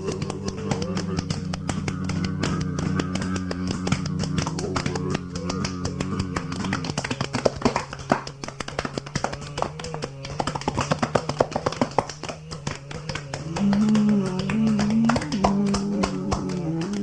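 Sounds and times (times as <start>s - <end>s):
steady low drone: 0.0s - 7.2s
music of quick taps and clicks: 0.0s - 17.0s.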